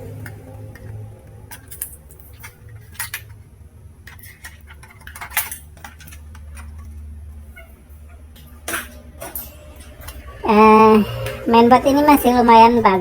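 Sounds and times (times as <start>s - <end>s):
plastic and metal parts clattering: 0.0s - 7.2s, 8.4s - 10.2s.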